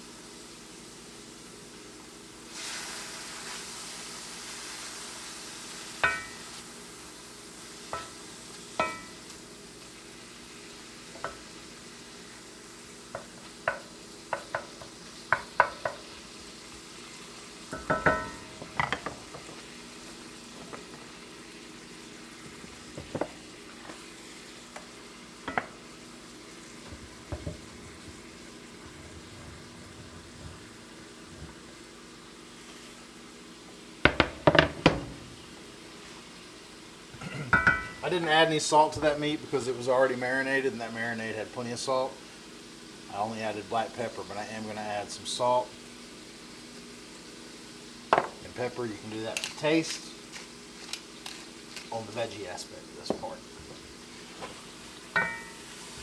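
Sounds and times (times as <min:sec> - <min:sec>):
food sizzling in skillet: 0:00.0 - 0:56.0
utensil clinking against pan: 0:06.0 - 0:06.4, 0:08.8 - 0:09.2, 0:37.5 - 0:38.0, 0:55.2 - 0:55.7.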